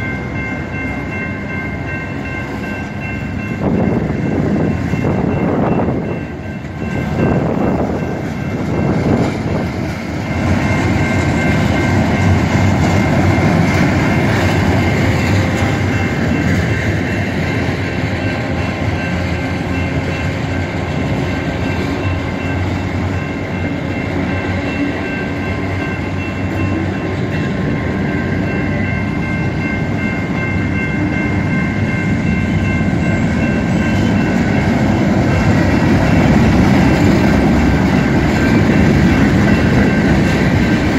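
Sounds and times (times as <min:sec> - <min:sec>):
freight train wheels rumbling: 0:00.0 - 0:40.9.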